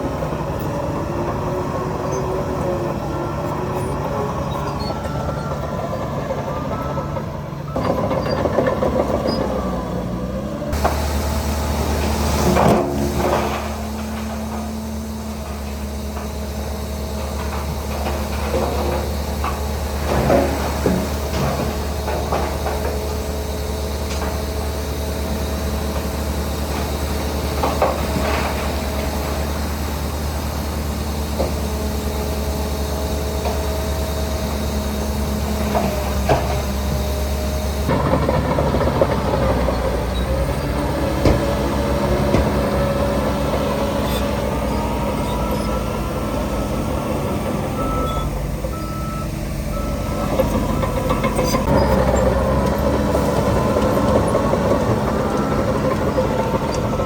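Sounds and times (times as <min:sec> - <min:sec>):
diesel construction machinery running: 0:00.0 - 0:57.0.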